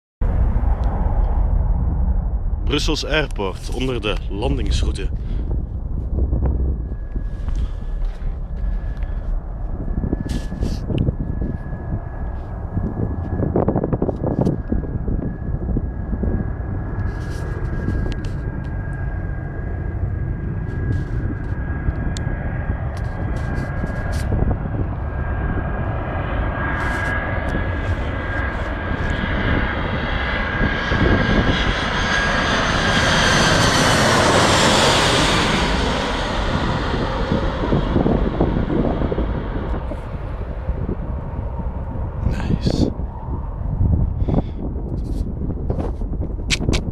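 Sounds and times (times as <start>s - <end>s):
airliner engine whine: 0.2s - 46.9s
rush of jet noise: 2.6s - 5.5s, 42.2s - 43.3s.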